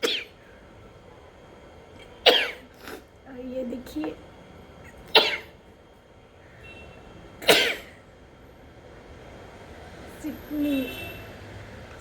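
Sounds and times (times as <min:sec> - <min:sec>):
person coughing or sneezing: 0:00.0 - 0:00.4, 0:02.2 - 0:03.0, 0:05.1 - 0:05.6, 0:07.4 - 0:08.0.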